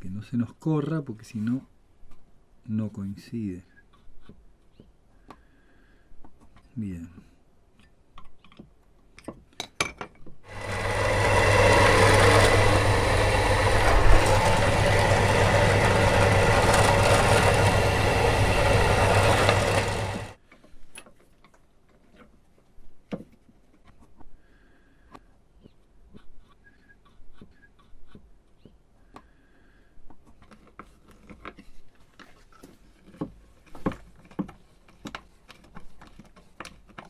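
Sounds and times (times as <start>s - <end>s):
electric drill boring wood: 10.5s - 20.4s.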